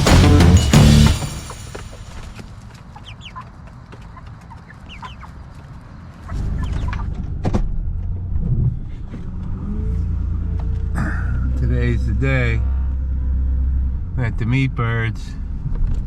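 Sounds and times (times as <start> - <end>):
chickens clucking: 1.7 - 7.3
low steady rumble: 6.3 - 16.0.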